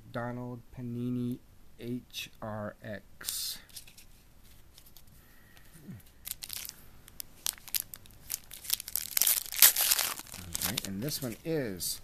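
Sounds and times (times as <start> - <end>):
foil wrapper crinkling and tearing: 6.2 - 6.8, 7.4 - 11.4.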